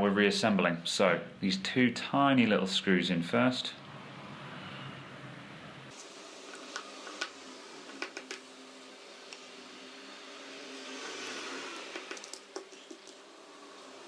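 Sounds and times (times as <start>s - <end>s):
steady low hiss: 5.9s - 14.0s
screwdriver clicks and taps: 7.9s - 8.4s.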